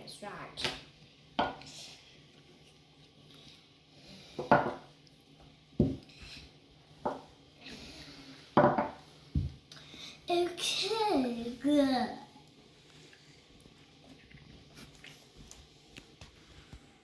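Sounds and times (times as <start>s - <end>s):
tools knocking on tabletop: 8.6s - 9.5s.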